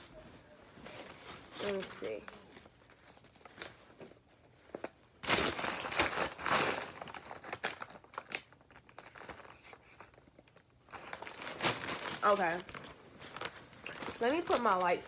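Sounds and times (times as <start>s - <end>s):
food packaging crinkling: 4.6s - 15.0s.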